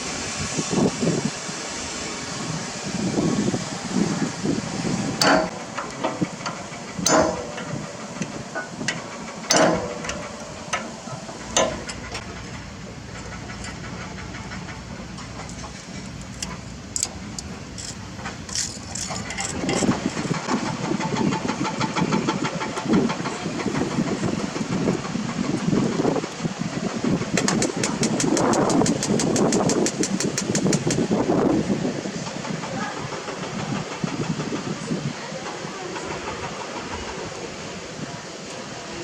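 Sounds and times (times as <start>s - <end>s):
sharp metallic clanks: 5.2s - 12.4s.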